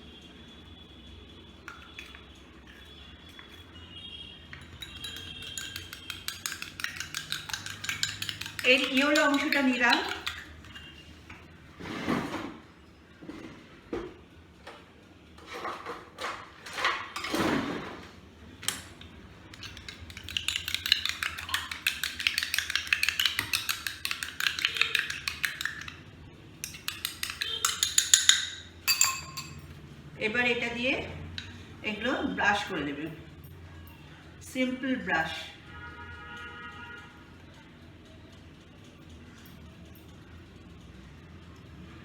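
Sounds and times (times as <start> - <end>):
spoon clinking against bowl: 4.5 - 11.0, 19.5 - 29.8.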